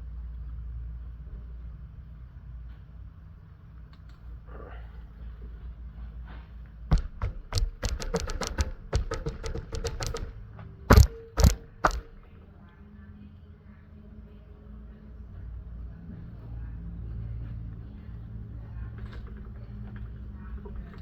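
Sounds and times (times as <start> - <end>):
loud knocks: 6.9 - 12.3.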